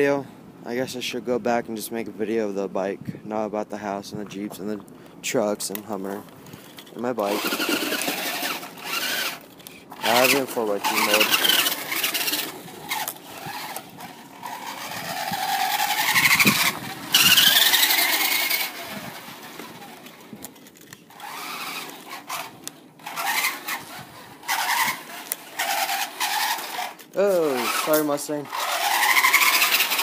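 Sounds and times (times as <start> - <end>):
toy car electric motor whining: 7.2 - 30.0.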